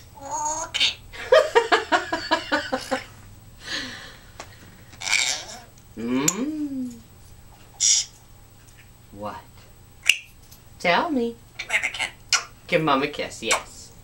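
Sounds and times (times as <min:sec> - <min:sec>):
parrot hissing: 0:03.6 - 0:06.9, 0:07.8 - 0:08.1
parrot whistled call: 0:05.0 - 0:05.7.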